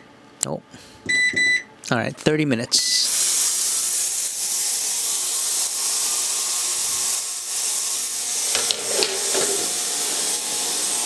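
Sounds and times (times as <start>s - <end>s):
ultrasonic cleaner hissing and buzzing: 2.9s - 11.0s.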